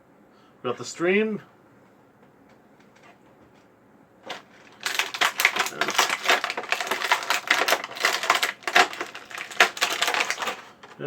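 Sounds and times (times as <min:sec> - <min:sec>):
plastic packaging crinkling: 0:04.2 - 0:11.0.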